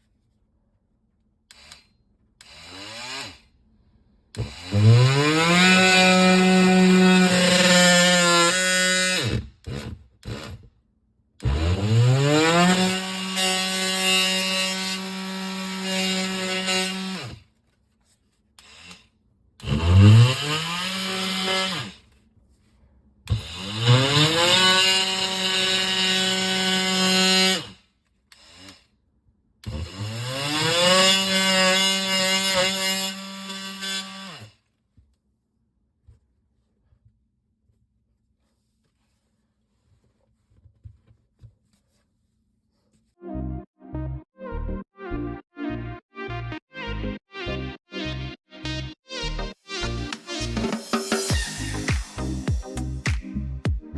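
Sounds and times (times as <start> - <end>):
power tool cutting sheetrock: 1.5 - 3.4, 4.4 - 10.7, 11.4 - 17.4, 18.6 - 22.0, 23.3 - 27.8, 28.4 - 28.8, 29.6 - 34.5, 50.2 - 53.2.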